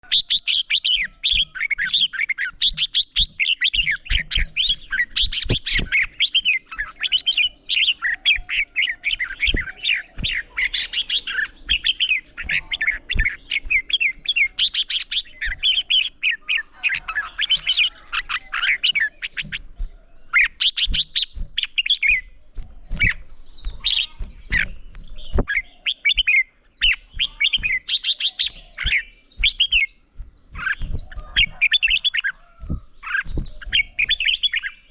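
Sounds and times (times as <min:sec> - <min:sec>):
birds singing: 0:00.0 - 0:34.9.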